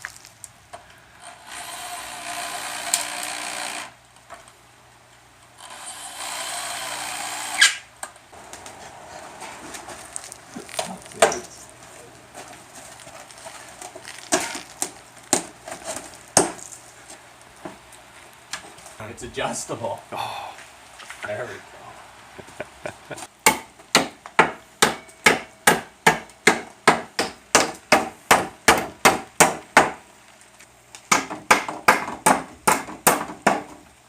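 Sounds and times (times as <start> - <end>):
power drill running: 5.6 - 7.6.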